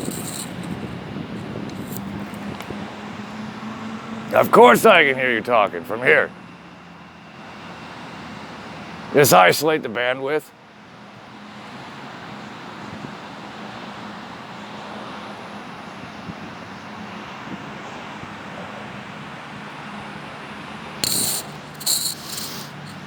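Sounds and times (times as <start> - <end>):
sharp bursts of noise: 0.0 - 1.0, 21.0 - 23.0
machinery or traffic rush: 0.0 - 23.0.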